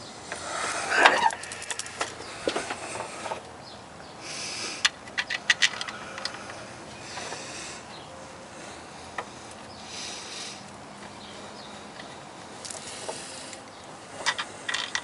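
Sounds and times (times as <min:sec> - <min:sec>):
metallic clicks and taps of tools: 0:04.8 - 0:06.6.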